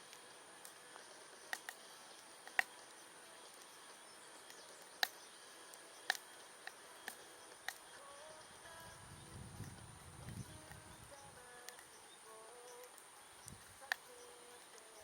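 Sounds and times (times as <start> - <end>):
wood fire crackling and popping: 0.0 - 12.0
faint steady hiss: 0.0 - 15.0.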